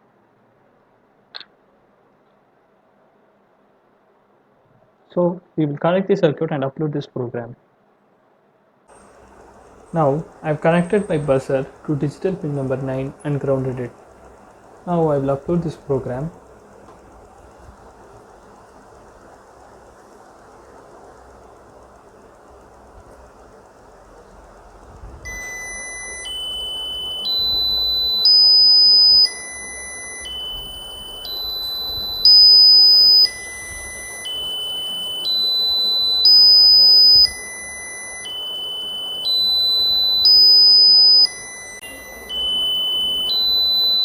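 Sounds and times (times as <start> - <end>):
piezo buzzer rising tones: 8.9 - 44.0.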